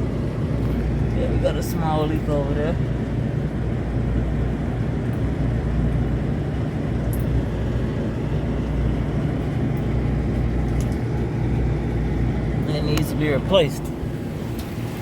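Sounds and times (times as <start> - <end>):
cooling tower fan rumble: 0.0 - 15.0.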